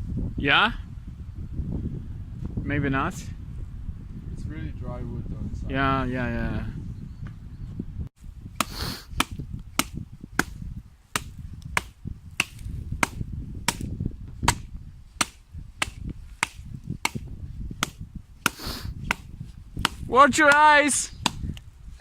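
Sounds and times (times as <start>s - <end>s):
dry wood being chopped: 8.6s - 21.7s.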